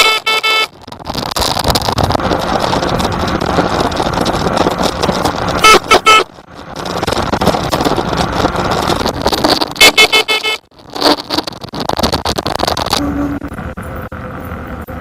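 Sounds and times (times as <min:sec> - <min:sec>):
bicycle signal high beeps: 0:00.0 - 0:00.7
rolling noise: 0:00.0 - 0:15.0
wind: 0:00.0 - 0:15.0.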